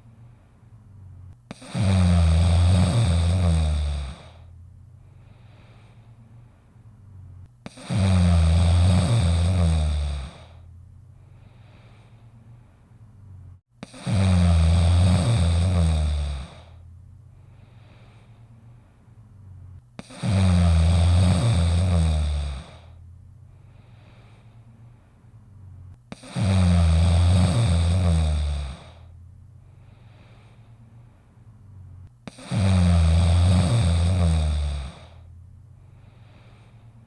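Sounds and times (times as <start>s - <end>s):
faint breaths: 0.0s - 37.0s
dog snoring: 1.5s - 4.5s, 7.6s - 10.6s, 13.8s - 16.8s, 20.0s - 23.0s, 26.1s - 29.1s, 32.2s - 35.3s.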